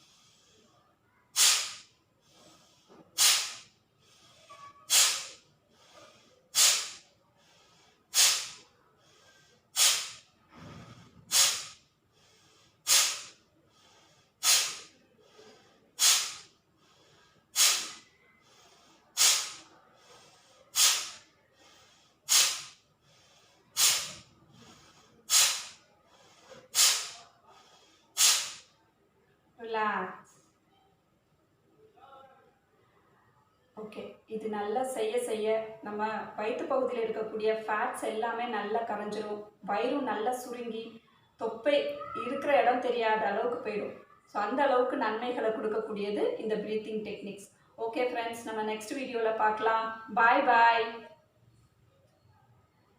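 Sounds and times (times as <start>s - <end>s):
faint breathing: 0.0s - 28.8s
forceful hissing exhalations: 1.3s - 28.8s.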